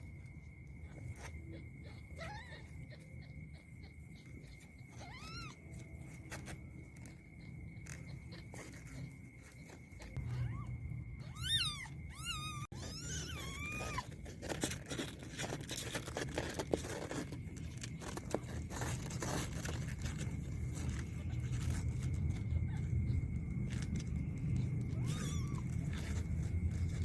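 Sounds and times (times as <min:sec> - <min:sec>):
cat meowing: 0:01.2 - 0:05.8, 0:10.2 - 0:14.1, 0:24.8 - 0:26.2.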